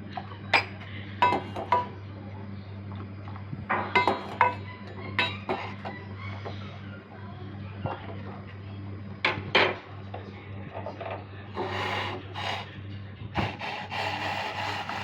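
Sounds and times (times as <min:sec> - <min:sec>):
steady low hum: 0:00.0 - 0:15.0
spoon clinking against cup: 0:04.0 - 0:04.6, 0:05.2 - 0:05.9.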